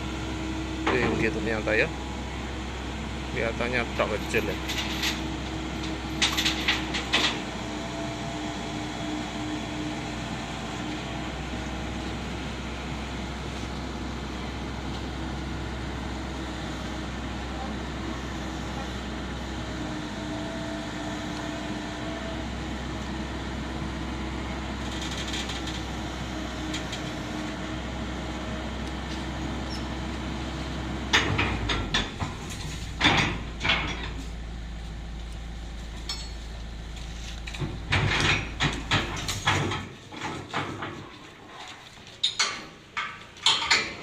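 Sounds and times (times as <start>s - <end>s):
diesel engine running: 0.0s - 40.5s
loud metallic clanks and knocks: 31.1s - 34.3s, 37.5s - 41.2s, 42.3s - 44.0s.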